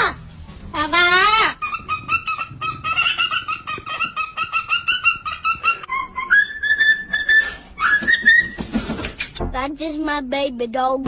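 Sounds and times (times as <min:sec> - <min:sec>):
animal clucking calls: 0:01.0 - 0:08.6.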